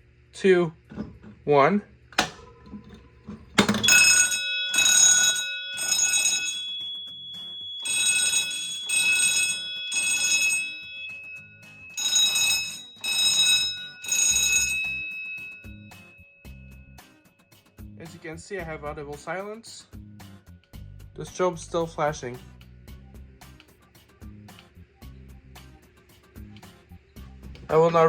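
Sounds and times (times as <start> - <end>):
fire alarm blasts: 3.8 - 16.0.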